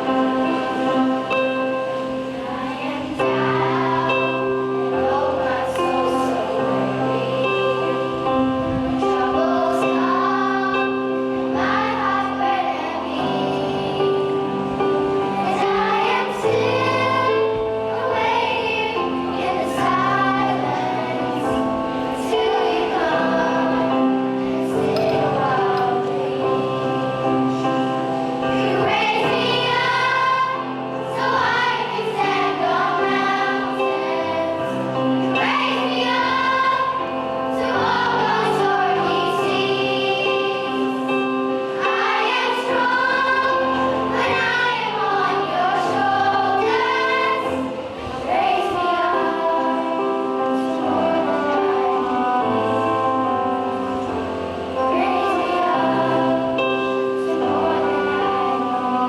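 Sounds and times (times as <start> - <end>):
choir singing: 0.0 - 59.0
instrumental accompaniment: 0.0 - 59.0.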